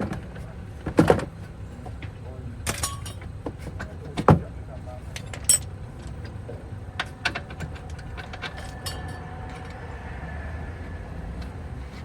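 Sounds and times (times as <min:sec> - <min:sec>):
metallic clicks and clinks: 0:05.2 - 0:06.3.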